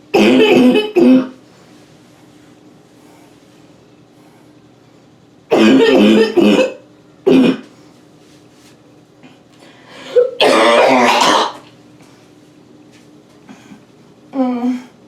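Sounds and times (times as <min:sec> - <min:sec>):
woman coughing: 0:00.1 - 0:01.4, 0:05.5 - 0:07.6, 0:10.1 - 0:11.6.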